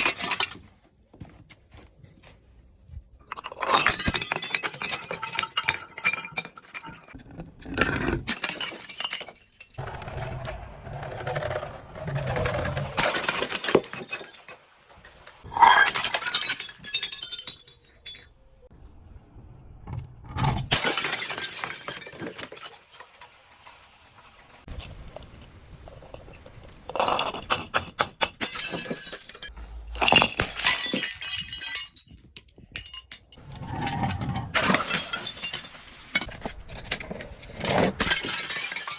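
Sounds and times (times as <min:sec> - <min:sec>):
glass bottles shattering: 0:00.0 - 0:00.6, 0:03.3 - 0:07.2, 0:08.0 - 0:09.8, 0:12.1 - 0:18.6, 0:20.7 - 0:23.1, 0:27.0 - 0:37.0, 0:37.6 - 0:38.9.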